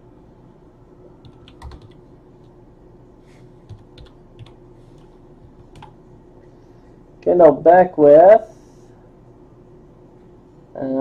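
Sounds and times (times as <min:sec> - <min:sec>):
faint steady hum: 0:00.0 - 0:11.0
typing on computer keyboard: 0:01.2 - 0:02.6, 0:03.7 - 0:06.0.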